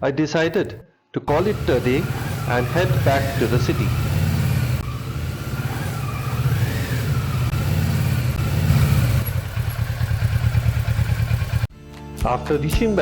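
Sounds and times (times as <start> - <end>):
motorcycle engine running: 1.3 - 11.7.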